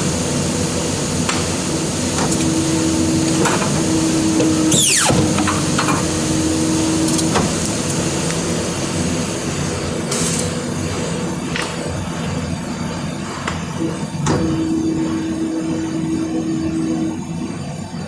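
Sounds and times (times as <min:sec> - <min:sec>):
steady hum: 0:01.8 - 0:10.0.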